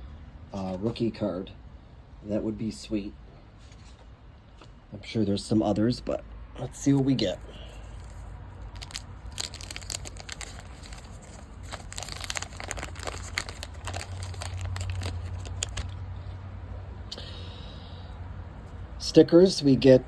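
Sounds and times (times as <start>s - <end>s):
wax paper wrapper tearing and crinkling: 7.7s - 16.0s.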